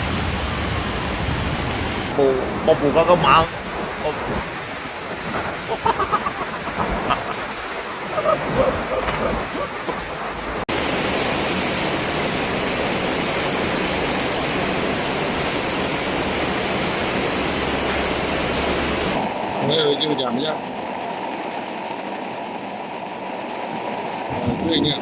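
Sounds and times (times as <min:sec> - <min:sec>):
floodwater rushing: 0:00.0 - 0:25.0
faint voices: 0:08.2 - 0:10.1.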